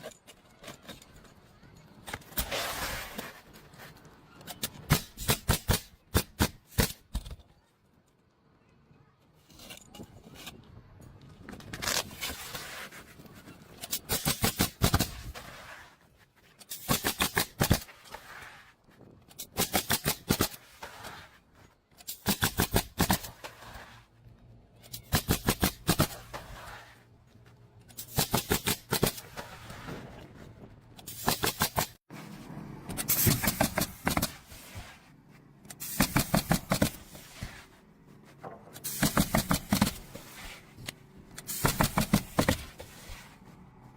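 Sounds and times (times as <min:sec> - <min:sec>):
pneumatic nail gun firing: 0:04.9 - 0:07.1, 0:13.9 - 0:15.4, 0:16.7 - 0:17.9, 0:19.5 - 0:20.6, 0:22.1 - 0:23.4, 0:25.0 - 0:26.4, 0:28.0 - 0:29.4, 0:31.0 - 0:32.0, 0:32.9 - 0:34.6, 0:35.7 - 0:37.5, 0:38.8 - 0:40.4, 0:41.4 - 0:42.8.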